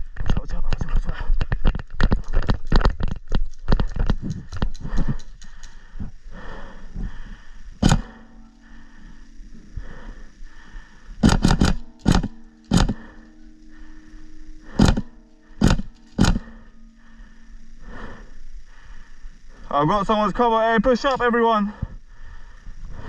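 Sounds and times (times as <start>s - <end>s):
faint steady hum: 0.0s - 23.0s
airsoft gun shots: 7.8s - 8.1s, 11.2s - 13.0s, 14.7s - 16.5s.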